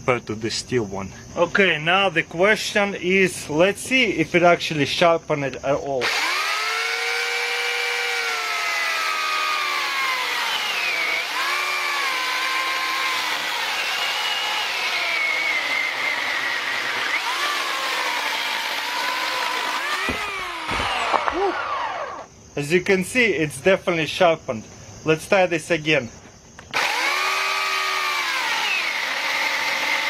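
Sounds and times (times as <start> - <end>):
electric chainsaw cutting wood: 6.0 - 22.3, 26.7 - 30.0.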